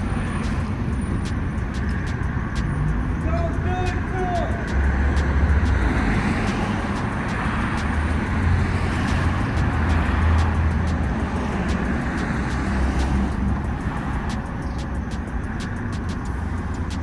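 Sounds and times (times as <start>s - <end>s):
vehicles passing: 0.0s - 17.0s.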